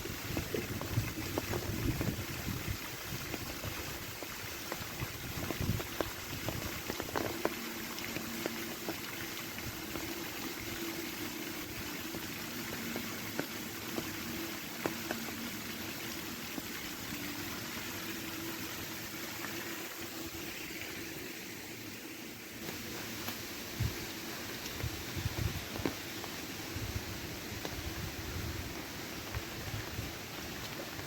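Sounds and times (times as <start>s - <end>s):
wind buffeting microphone: 0.0s - 4.2s, 4.9s - 7.2s, 24.7s - 25.9s, 26.7s - 30.7s
water flowing and bubbling: 0.0s - 31.0s.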